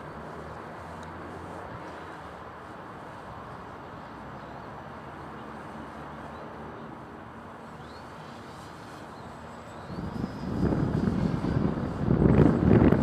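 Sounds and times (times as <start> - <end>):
model plane motor drone: 6.8 - 13.0
wind on microphone: 9.8 - 13.0.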